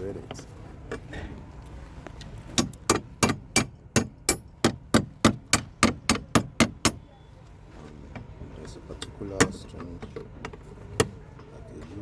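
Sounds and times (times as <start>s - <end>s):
hand tool tapping metal part: 2.6s - 7.0s, 9.0s - 11.1s.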